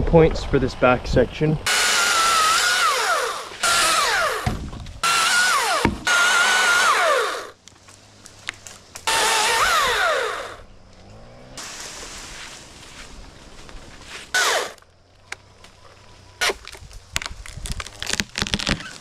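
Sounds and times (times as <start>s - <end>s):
electric chainsaw whining: 1.7s - 7.6s, 9.0s - 11.6s, 14.3s - 14.8s.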